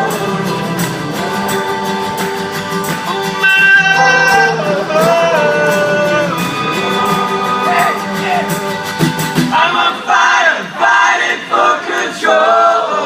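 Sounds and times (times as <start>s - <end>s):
held high melody line: 0.0s - 9.4s
rock band playing: 0.0s - 10.4s.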